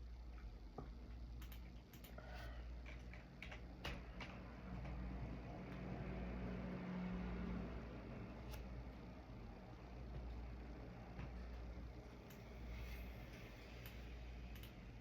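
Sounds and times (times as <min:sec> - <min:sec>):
low steady hum: 0:00.0 - 0:15.0
computer keyboard keystrokes: 0:01.4 - 0:02.2, 0:02.8 - 0:05.0, 0:13.8 - 0:14.8.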